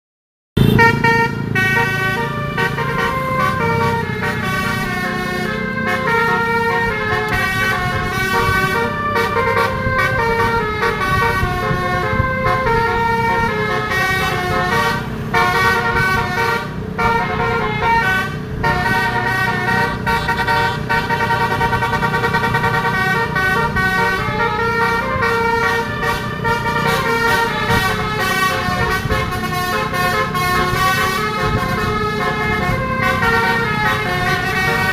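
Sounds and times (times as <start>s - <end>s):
musical bus air horns playing tune: 0.6s - 34.9s.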